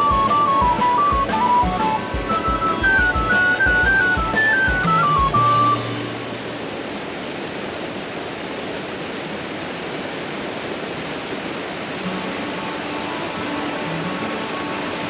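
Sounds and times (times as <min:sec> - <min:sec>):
background music: 0:00.0 - 0:06.5, 0:12.1 - 0:15.0
steady rushing noise: 0:00.0 - 0:15.0.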